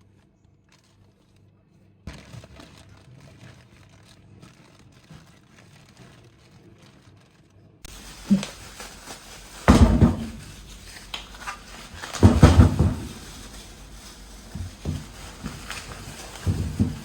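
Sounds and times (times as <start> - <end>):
knocks: 7.9 - 17.0
objects clattering: 7.9 - 17.0.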